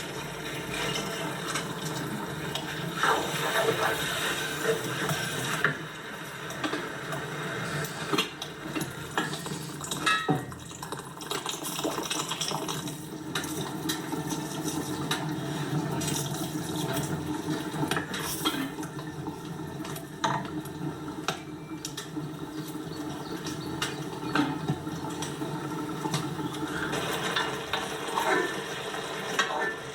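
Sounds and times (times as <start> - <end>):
dishes and utensils clinking: 8.0 - 15.3, 17.8 - 19.0.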